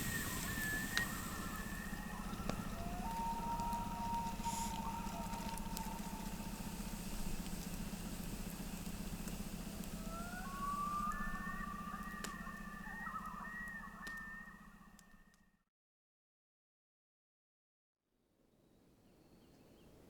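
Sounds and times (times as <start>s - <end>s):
loons wailing: 0.0s - 15.3s
low pulsing drone: 0.0s - 15.3s.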